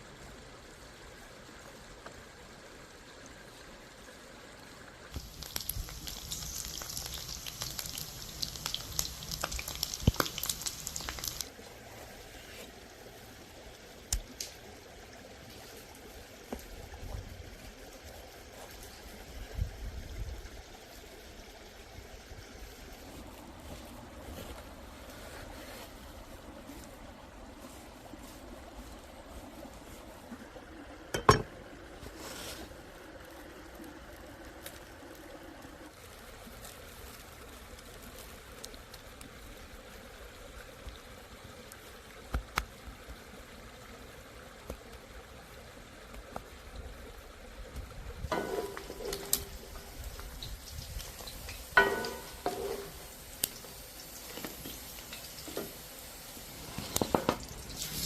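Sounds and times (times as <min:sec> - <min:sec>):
liquid trickling and bubbling: 0:05.1 - 0:32.1, 0:32.7 - 0:58.0
cookware clinking: 0:31.2 - 0:31.5, 0:48.3 - 0:49.4, 0:51.8 - 0:53.0.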